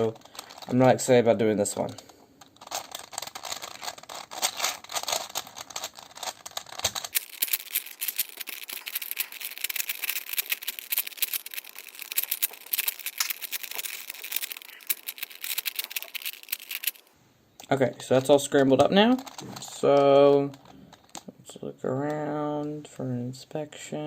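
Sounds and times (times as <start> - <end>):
plastic puzzle cube clicking: 0.0 - 17.1, 19.1 - 21.3.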